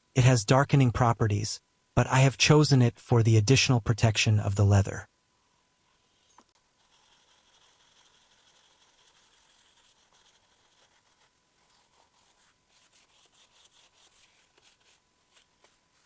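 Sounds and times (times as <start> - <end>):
scratchy rubbing on leather: 5.9 - 16.0.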